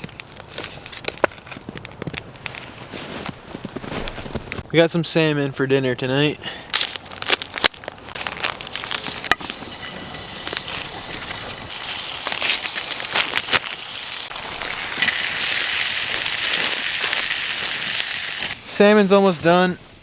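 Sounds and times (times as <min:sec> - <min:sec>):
crackling pops: 0:00.0 - 0:04.7, 0:06.6 - 0:18.6
fish sizzling over campfire: 0:06.7 - 0:18.6.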